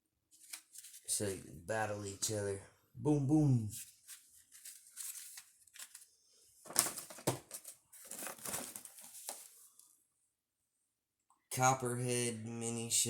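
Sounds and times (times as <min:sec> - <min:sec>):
packaging crinkling and rustling: 0:03.9 - 0:09.8.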